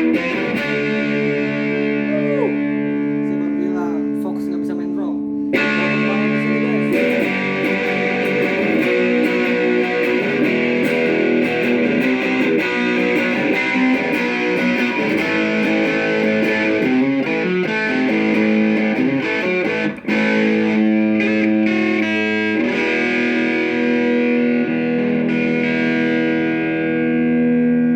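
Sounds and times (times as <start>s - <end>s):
overdriven electric guitar chords: 0.0s - 27.9s.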